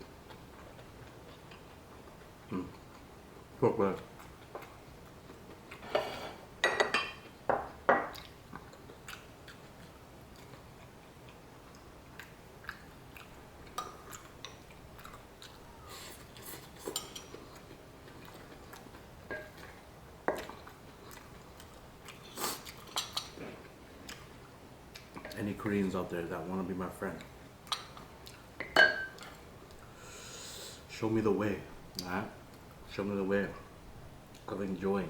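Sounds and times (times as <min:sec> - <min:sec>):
soft chewing: 0:00.0 - 0:06.0, 0:07.2 - 0:26.0, 0:26.9 - 0:30.8.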